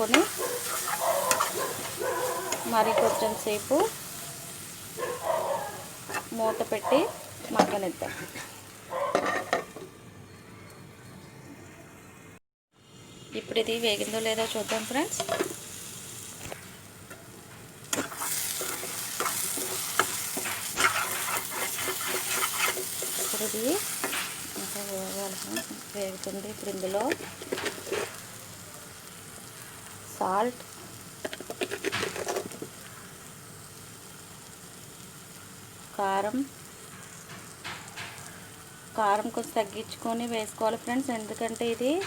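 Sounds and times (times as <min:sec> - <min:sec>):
paste sizzling in oil: 0:00.0 - 0:09.9, 0:12.9 - 0:42.0
spoon stirring and scraping pan: 0:00.0 - 0:09.9, 0:14.3 - 0:15.6, 0:17.1 - 0:28.4, 0:30.6 - 0:32.9.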